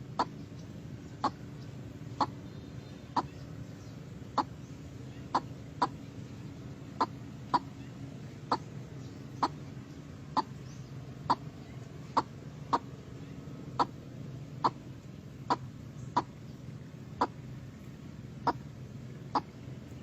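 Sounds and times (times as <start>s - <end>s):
waterhen clucking calls: 0.0s - 20.0s.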